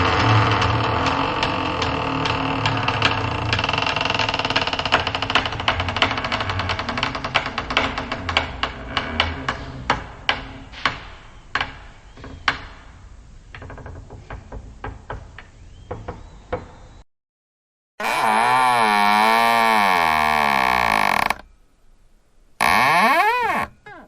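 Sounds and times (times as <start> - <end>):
door hinge creaking clicks: 0.0 - 12.6, 18.0 - 21.5, 22.6 - 24.0.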